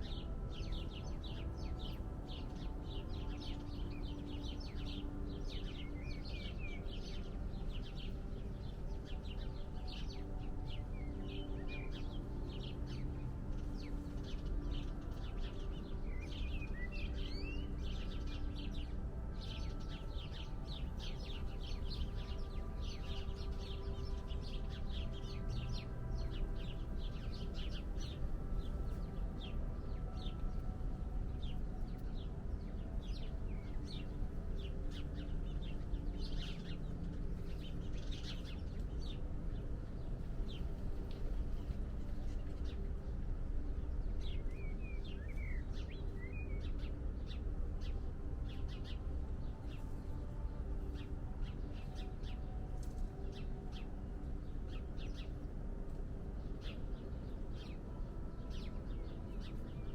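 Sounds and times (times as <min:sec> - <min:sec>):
small birds chirping: 0:00.0 - 0:59.9.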